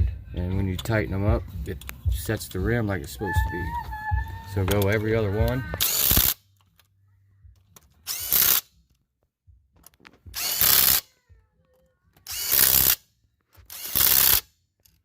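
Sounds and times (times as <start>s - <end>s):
impact gun tightening lug nuts: 5.8s - 6.4s, 7.8s - 8.7s, 9.8s - 11.1s, 12.2s - 15.0s.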